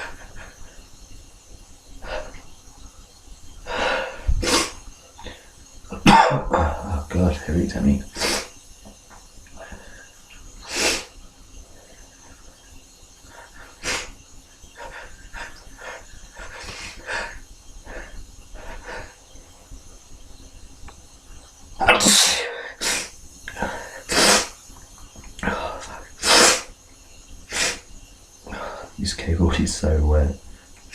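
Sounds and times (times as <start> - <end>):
man sneezing: 21.8 - 23.1.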